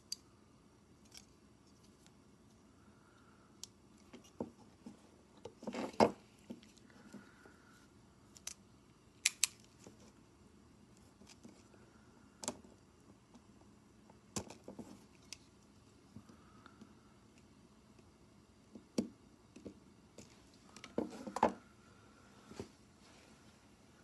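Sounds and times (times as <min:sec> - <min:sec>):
small parts and tools clicking: 0:08.3 - 0:08.6, 0:09.2 - 0:09.9.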